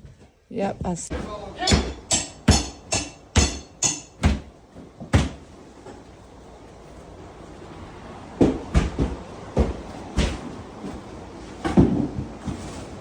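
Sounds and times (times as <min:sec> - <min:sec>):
heavy knocks on drywall: 0:01.1 - 0:05.4, 0:08.4 - 0:10.5.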